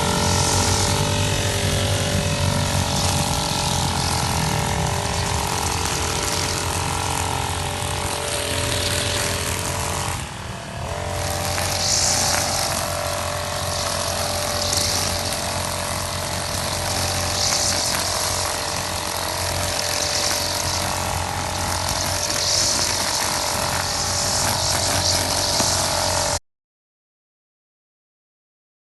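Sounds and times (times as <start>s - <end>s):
brush cutter engine running: 0.0s - 26.4s
trimmer line cutting grass: 0.0s - 26.4s.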